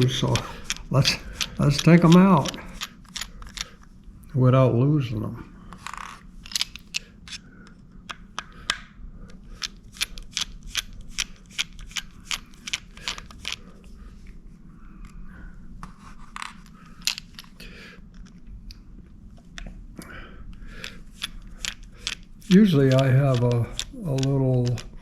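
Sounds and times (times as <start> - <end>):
screwdriver clicking on screws: 0.0 - 3.7, 20.8 - 25.0.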